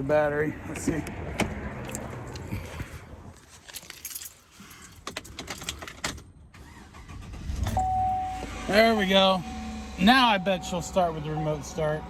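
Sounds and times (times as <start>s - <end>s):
keys jangling: 3.7s - 5.9s.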